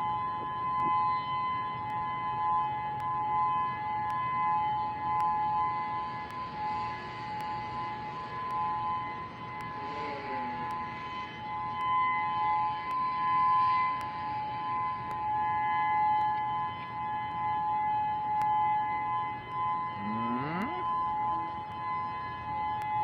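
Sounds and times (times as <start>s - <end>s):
two-tone warning siren: 0.0s - 23.0s
rising voice-like call: 19.9s - 21.6s.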